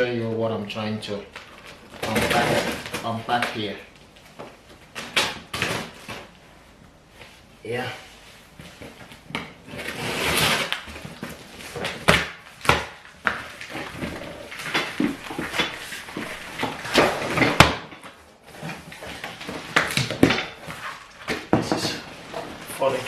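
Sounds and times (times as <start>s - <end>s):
cardboard box scraping and sliding: 9.8s - 10.8s.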